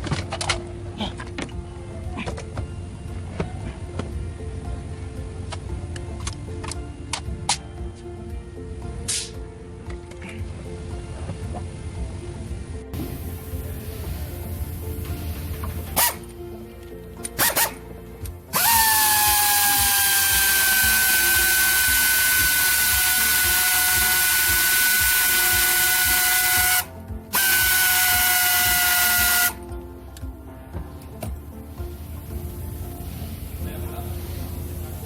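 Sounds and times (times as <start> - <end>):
loud hiss: 13.0 - 16.3, 18.5 - 29.6
power tool whining: 18.5 - 29.6.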